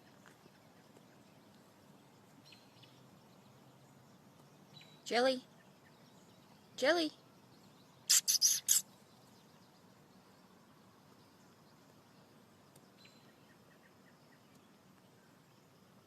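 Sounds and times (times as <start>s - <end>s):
person making hissing psst calls: 8.1s - 8.8s.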